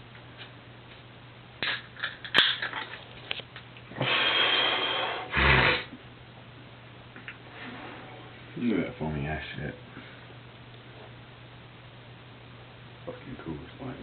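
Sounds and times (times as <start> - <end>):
foaming hiss: 4.0 - 5.9.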